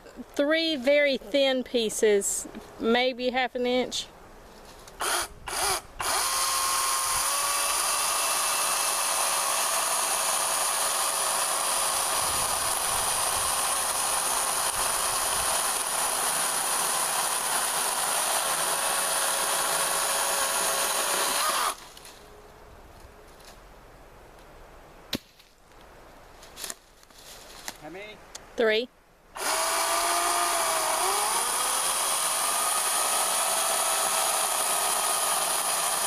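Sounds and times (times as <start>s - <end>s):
chainsaw cutting wood: 5.0s - 22.1s, 29.4s - 36.0s.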